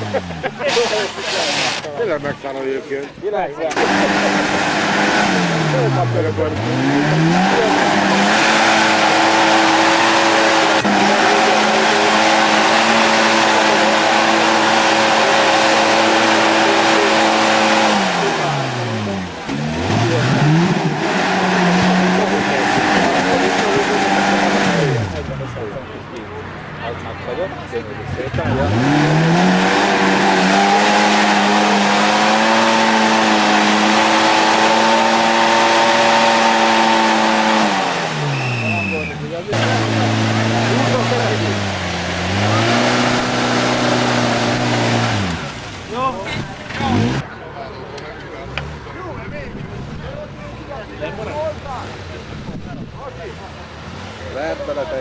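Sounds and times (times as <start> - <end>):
engine revving hard: 0.0 - 2.8, 3.6 - 47.4
rushing noise: 3.7 - 25.8.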